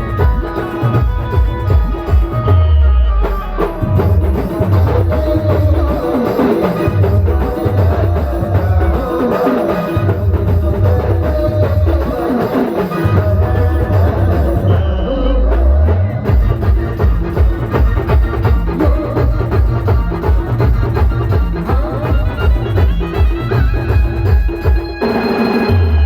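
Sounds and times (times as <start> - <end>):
heavy drum beat: 0.0 - 2.6, 3.2 - 26.0
band playing melody: 0.0 - 26.0.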